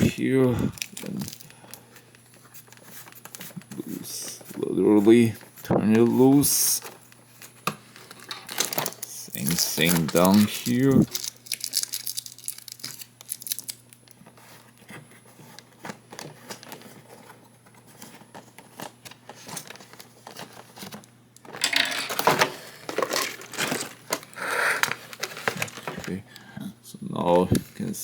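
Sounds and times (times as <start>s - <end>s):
cardboard and plastic crinkling: 0.0s - 26.2s
cardboard clicks and rustles: 5.4s - 26.2s.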